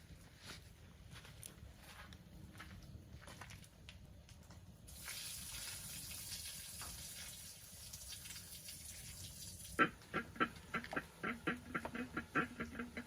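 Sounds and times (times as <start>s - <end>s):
water running: 4.9s - 9.8s.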